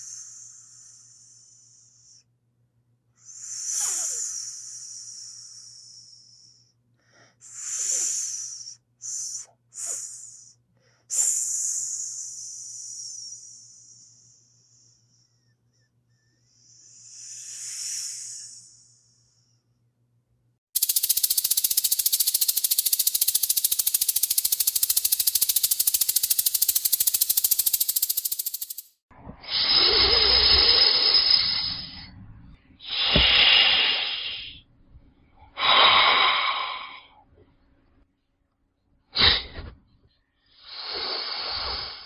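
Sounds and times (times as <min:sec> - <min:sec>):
snake hissing: 0:16.6 - 0:18.9, 0:20.8 - 0:31.7, 0:32.8 - 0:34.6, 0:40.6 - 0:42.0.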